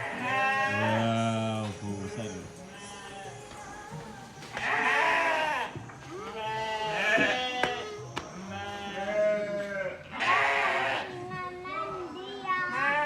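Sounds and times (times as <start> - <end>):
sheep bleating: 0.0 - 1.6, 2.2 - 3.5, 4.5 - 11.2, 12.6 - 13.0.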